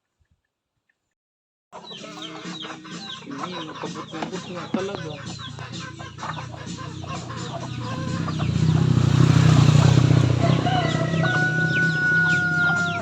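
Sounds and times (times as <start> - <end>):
chickens clucking: 1.8 - 13.0.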